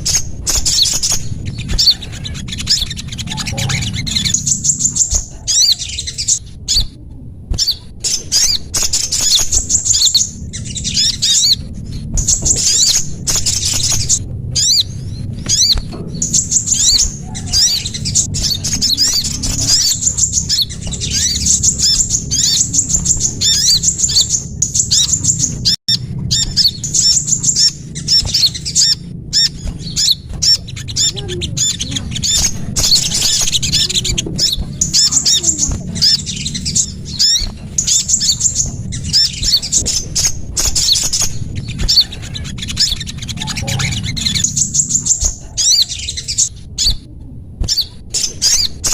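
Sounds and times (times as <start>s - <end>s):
low hum: 0.0s - 48.9s
songbirds chirping and trilling: 0.0s - 48.9s.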